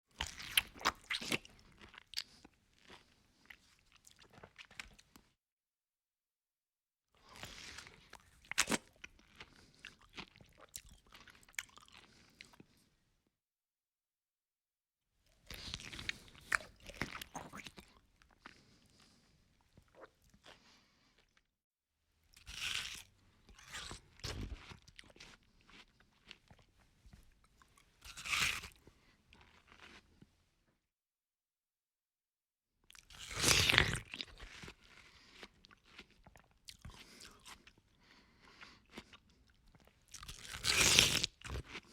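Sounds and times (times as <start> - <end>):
crunching bites of fruit: 0.1 - 5.2, 15.4 - 19.0, 22.4 - 26.6, 28.0 - 30.1, 32.9 - 37.7, 38.4 - 41.9
man chewing: 15.5 - 21.3
man biting into a peach: 28.1 - 28.8, 40.1 - 41.9.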